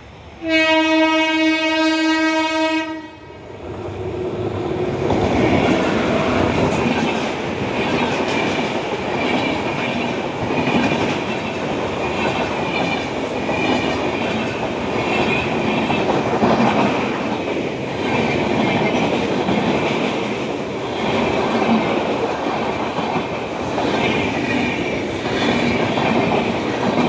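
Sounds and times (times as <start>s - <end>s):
train horn: 0.4s - 3.4s, 5.6s - 6.7s
train wheels clickety-clack: 3.7s - 27.0s.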